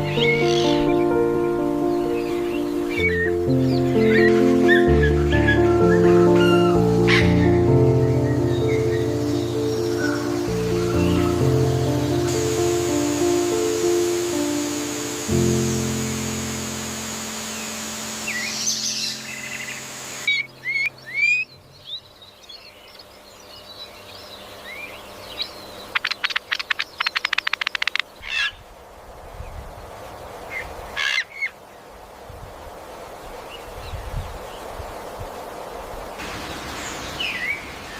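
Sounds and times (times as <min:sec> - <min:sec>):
guitar music: 0:00.0 - 0:21.2
birds chirping: 0:00.0 - 0:28.6, 0:36.2 - 0:37.9.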